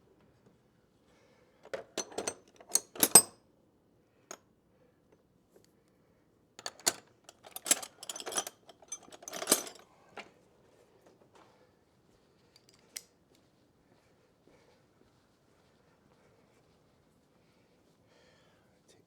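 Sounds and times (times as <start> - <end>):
metal tools clinking and rattling: 1.7 - 3.4, 6.6 - 10.3.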